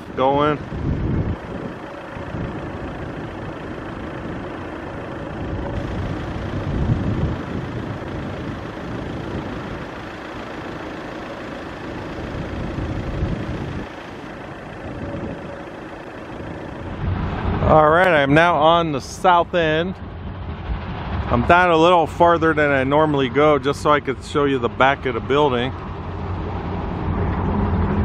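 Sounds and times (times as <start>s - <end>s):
engine rumble: 0.0s - 28.0s
road noise: 0.0s - 28.0s.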